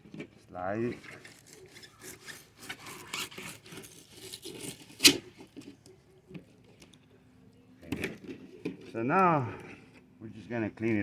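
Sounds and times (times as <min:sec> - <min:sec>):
fillet knife scraping fish skin: 0:01.1 - 0:05.4.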